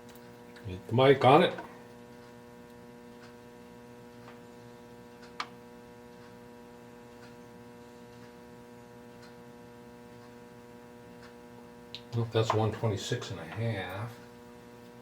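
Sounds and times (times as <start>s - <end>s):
electrical hum: 0.0s - 15.0s
faint ticks: 9.1s - 9.4s.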